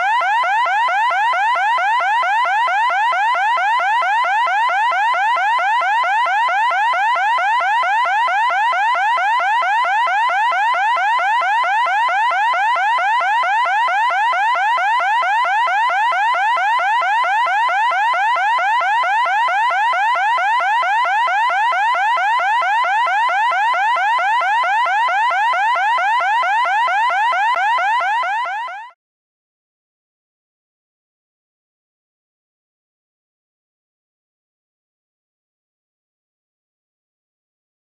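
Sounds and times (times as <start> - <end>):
electronic siren sweeping: 8.2 - 29.0.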